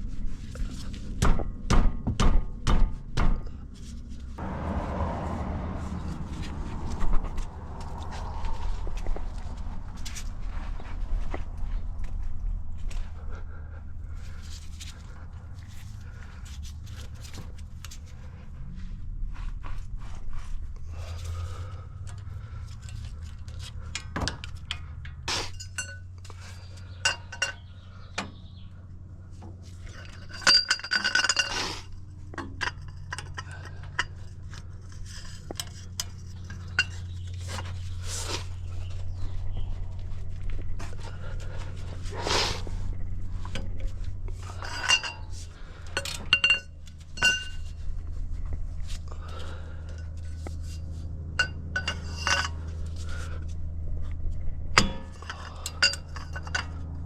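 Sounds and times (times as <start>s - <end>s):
steady low hum: 0.0s - 57.0s
ringing metallic clatter: 23.8s - 28.0s, 29.8s - 31.6s, 43.4s - 47.9s, 49.9s - 53.2s, 54.4s - 57.0s
metal hand tools clinking: 29.9s - 31.9s, 44.4s - 47.8s, 51.4s - 53.1s, 54.8s - 57.0s.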